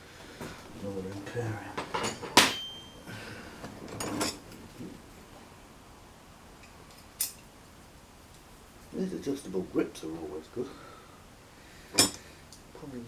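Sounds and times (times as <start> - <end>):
tools clinking and rattling: 0.4 - 4.7, 6.6 - 7.5, 12.0 - 12.7
spanner clanking on metal tools: 0.7 - 3.1, 3.9 - 4.5, 12.0 - 12.6.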